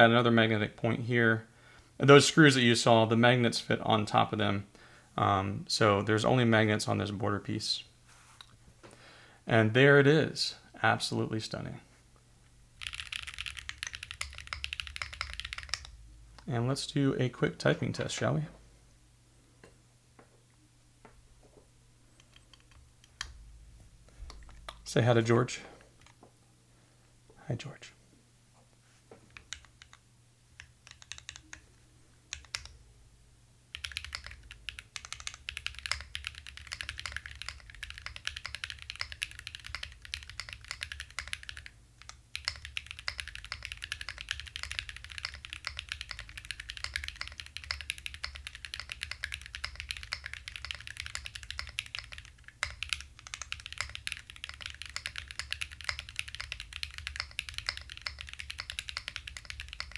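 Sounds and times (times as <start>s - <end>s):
mechanical keyboard typing: 12.8s - 16.0s, 29.3s - 30.0s, 30.6s - 31.7s, 32.3s - 32.8s, 33.7s - 59.9s.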